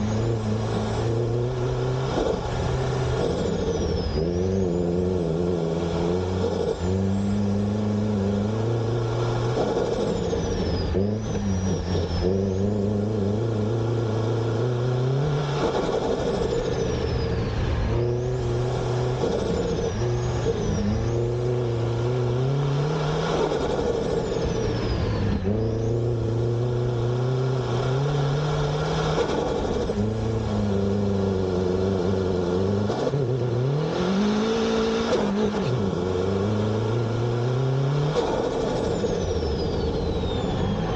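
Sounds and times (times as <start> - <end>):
car engine revving: 0.0 - 40.9
turbo whistle and flutter: 8.5 - 12.7, 38.2 - 40.9.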